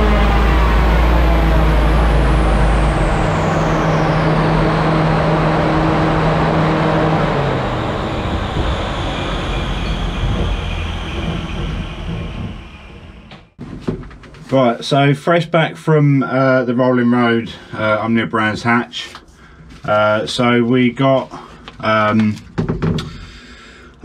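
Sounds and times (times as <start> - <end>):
high whine gliding down: 0.0 - 13.6
rollers coasting down: 0.0 - 13.6
steady hum: 0.0 - 13.6.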